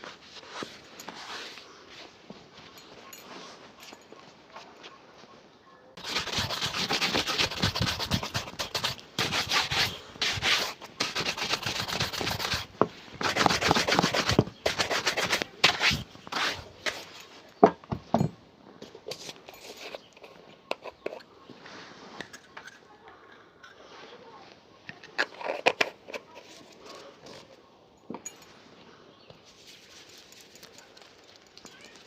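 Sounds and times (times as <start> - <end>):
shoe buffing strokes: 6.0 - 17.0.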